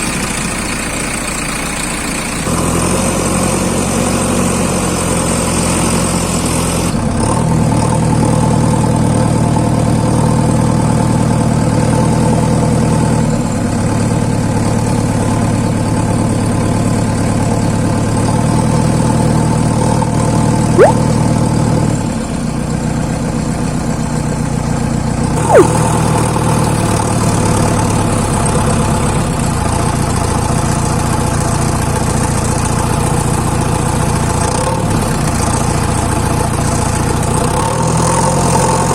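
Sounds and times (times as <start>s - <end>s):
sharp rising chirps: 20.8s - 21.2s, 25.4s - 25.8s.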